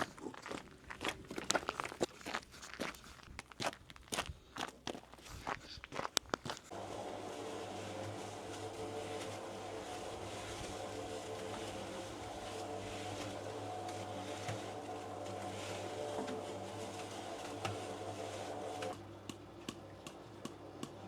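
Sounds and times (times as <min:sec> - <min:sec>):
crunching footsteps: 0:00.0 - 0:19.0
machine humming: 0:06.7 - 0:21.0.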